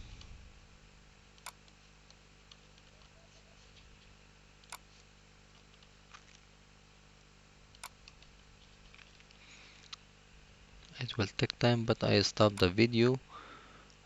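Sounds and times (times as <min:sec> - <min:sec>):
computer mouse clicks: 0:01.4 - 0:03.2, 0:04.6 - 0:04.9, 0:07.7 - 0:08.3.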